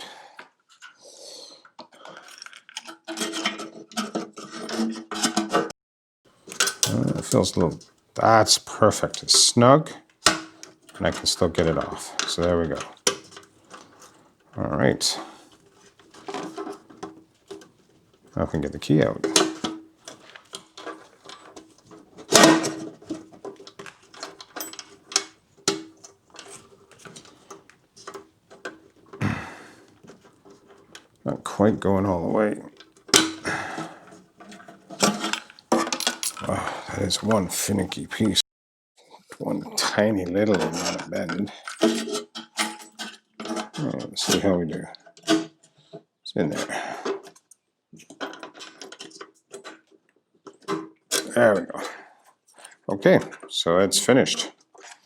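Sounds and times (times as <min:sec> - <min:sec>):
metal scraping and clicking: 0:02.4 - 0:05.7, 0:06.5 - 0:08.0, 0:18.6 - 0:29.2, 0:32.6 - 0:38.4.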